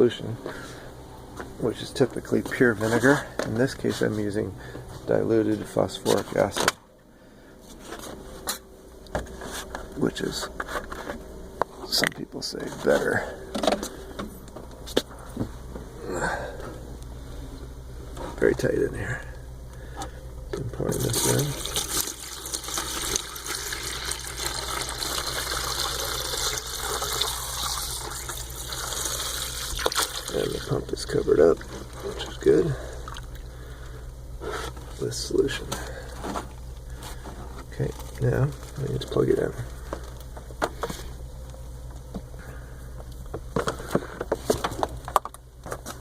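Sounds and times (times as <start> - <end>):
steady low hum: 0.0 - 46.0
liquid pouring into bucket: 20.9 - 30.8.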